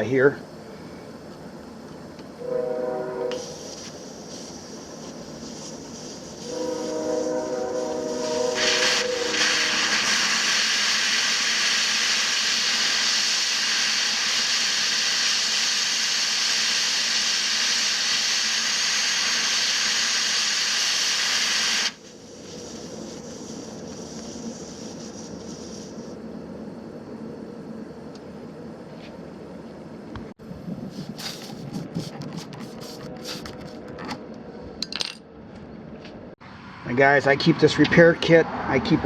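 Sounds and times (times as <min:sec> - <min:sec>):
air hissing out of tire: 0:03.1 - 0:26.2, 0:30.8 - 0:33.4.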